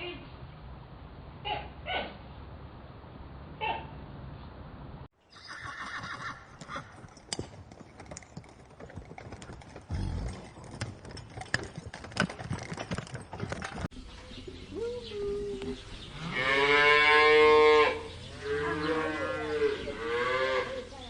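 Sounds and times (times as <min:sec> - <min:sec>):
horse whinnying: 0:05.3 - 0:07.1
hooves clip-clopping: 0:05.4 - 0:14.4.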